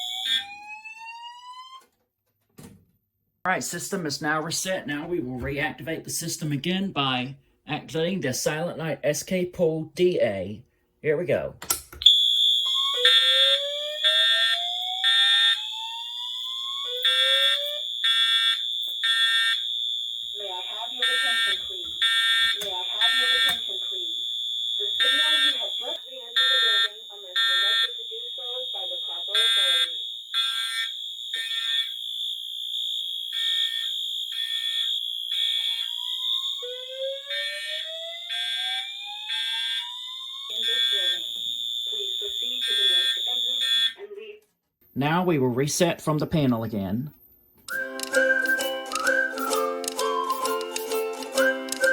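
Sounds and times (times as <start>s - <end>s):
fire alarm horn blasts: 0.0s - 1.9s, 12.0s - 44.0s, 47.7s - 50.6s.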